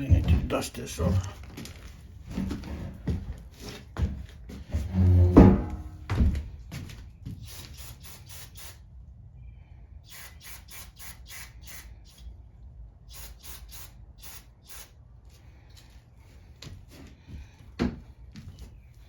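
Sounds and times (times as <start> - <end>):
aerosol spray hissing bursts: 7.4 - 8.8, 10.0 - 12.3, 13.1 - 15.0.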